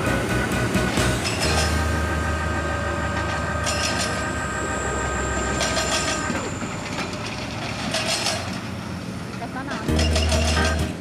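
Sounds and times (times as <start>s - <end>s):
heavy machinery humming and whining: 0.0s - 11.0s
metallic clanking and rattling: 1.0s - 2.1s, 3.1s - 4.5s, 5.4s - 8.7s, 9.4s - 11.0s.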